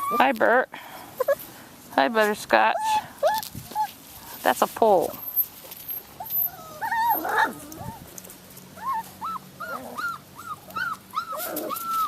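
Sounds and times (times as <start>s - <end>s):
puppy whimpering: 0.0s - 0.4s, 2.7s - 4.0s, 5.2s - 8.0s, 8.8s - 12.0s.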